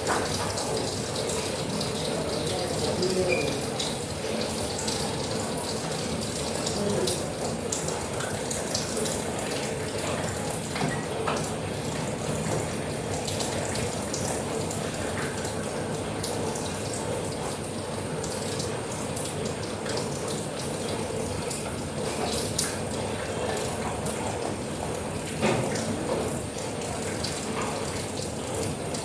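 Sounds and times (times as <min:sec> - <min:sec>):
steady rain: 0:00.0 - 0:29.0.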